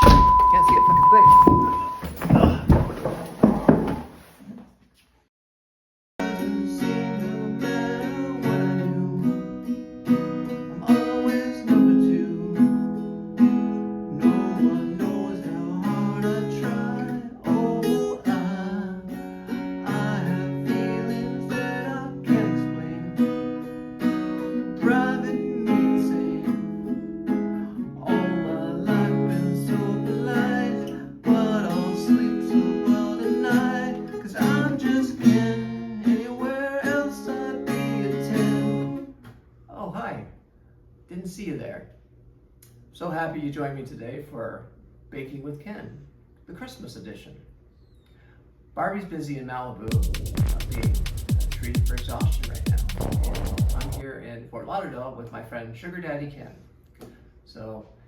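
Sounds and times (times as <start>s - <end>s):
guitar music plucked and strummed: 6.2s - 39.0s.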